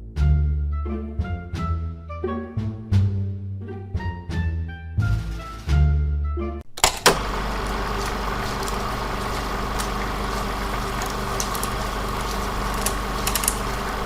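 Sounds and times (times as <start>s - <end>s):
low mechanical hum: 6.7s - 14.0s
small clicks: 6.7s - 14.0s.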